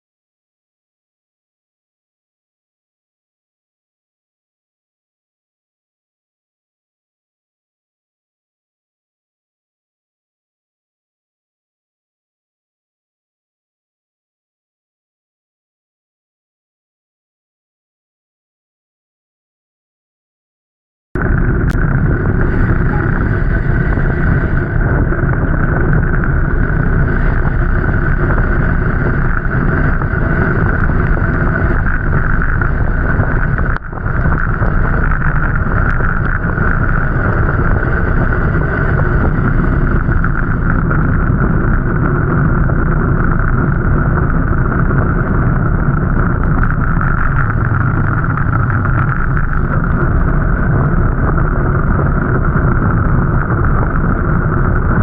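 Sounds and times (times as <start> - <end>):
vehicle running: 21.2 - 55.0
wind noise on microphone: 21.2 - 55.0.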